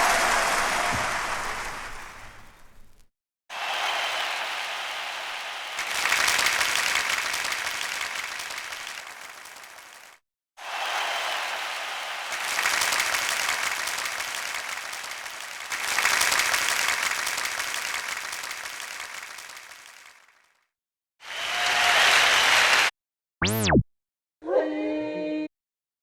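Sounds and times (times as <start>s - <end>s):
crowd applause: 0.0s - 2.9s, 3.5s - 20.5s, 21.3s - 22.9s.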